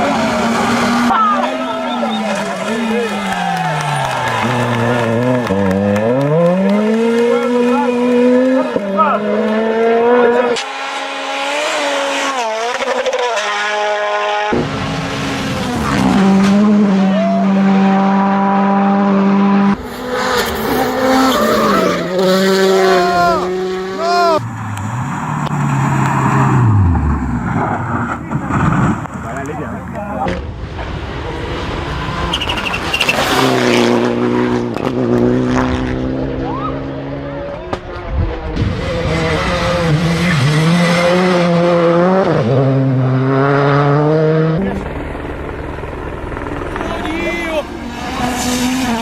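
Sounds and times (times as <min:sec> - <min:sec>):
rally car engine revving: 0:00.0 - 0:49.0
heavy low rumble and rushing: 0:24.4 - 0:36.6.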